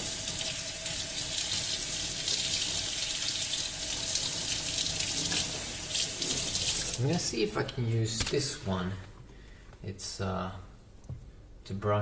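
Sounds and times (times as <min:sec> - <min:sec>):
tap water running into sink: 0:00.0 - 0:07.0.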